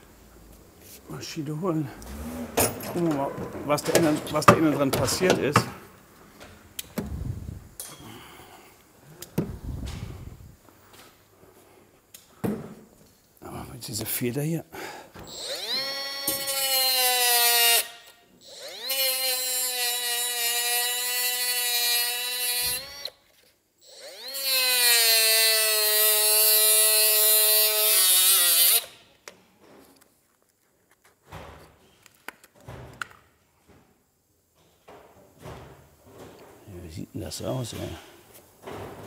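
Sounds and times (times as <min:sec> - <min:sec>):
angle grinder cutting metal: 0:15.3 - 0:23.1, 0:23.9 - 0:29.0.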